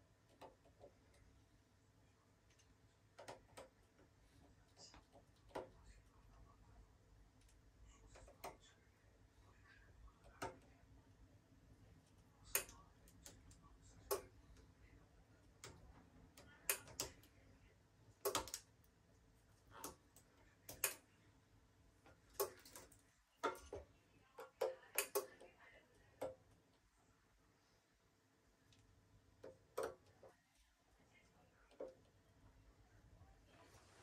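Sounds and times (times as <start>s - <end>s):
small tools clicking and tapping: 12.4s - 14.6s, 15.6s - 17.3s, 18.2s - 18.7s, 19.7s - 21.1s, 22.0s - 25.5s.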